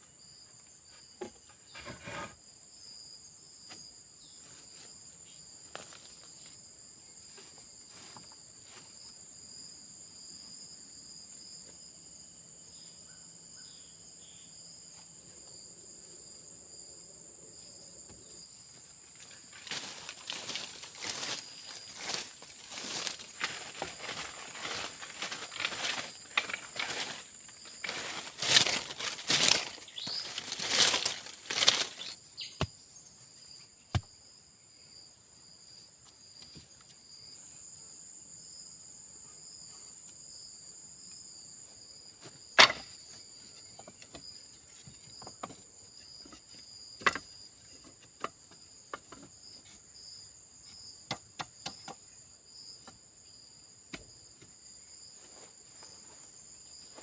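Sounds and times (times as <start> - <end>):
insects chirring: 0.0 - 57.0
rustling and crinkling: 19.1 - 32.2.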